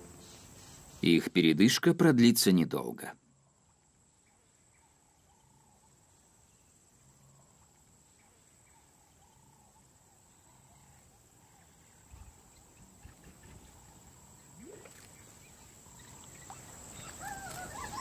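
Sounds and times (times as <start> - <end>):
faint animal calls: 15.7 - 18.0.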